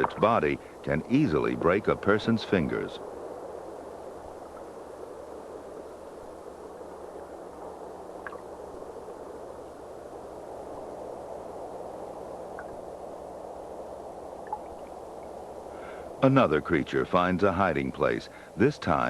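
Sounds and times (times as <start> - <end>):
faint clicks: 7.6 - 8.5, 12.5 - 12.8.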